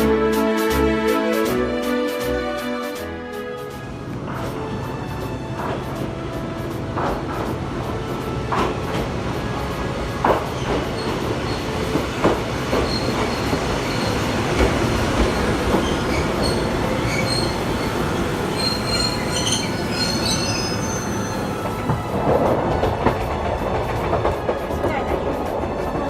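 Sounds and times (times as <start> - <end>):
train wheels rumbling on rail: 3.6 - 26.0
wheels clacking over rail joints: 5.2 - 26.0
high-pitched wheel squeals: 12.7 - 14.3, 15.4 - 22.0.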